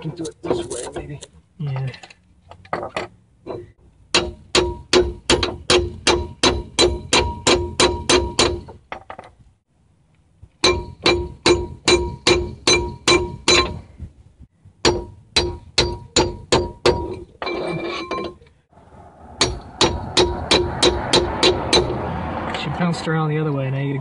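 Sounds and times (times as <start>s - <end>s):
hammer striking steel: 3.5s - 8.7s, 10.6s - 13.8s, 14.8s - 18.3s, 19.4s - 22.0s.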